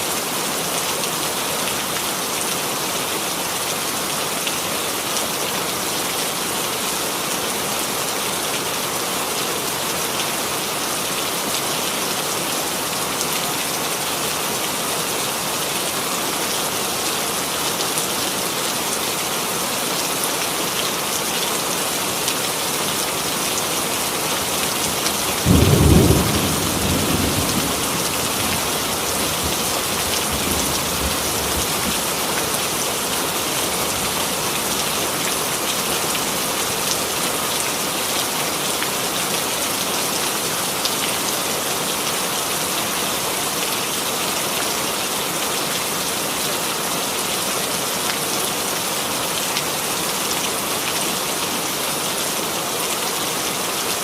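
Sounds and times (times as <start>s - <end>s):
heavy rain falling: 0.0s - 54.0s
thunder clap rumbling: 25.4s - 31.7s.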